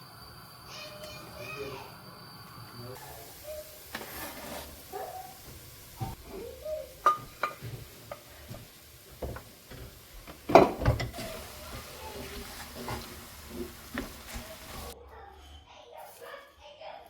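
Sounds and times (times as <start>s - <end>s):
dishes clattering: 6.9s - 15.0s
utensils clinking against dishes: 7.0s - 8.3s.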